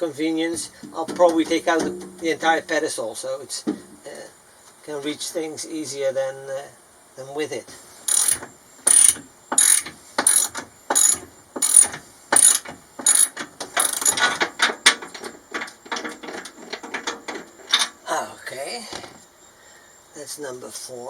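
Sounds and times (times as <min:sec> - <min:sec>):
ratchet wrench clicking: 0:08.1 - 0:14.2.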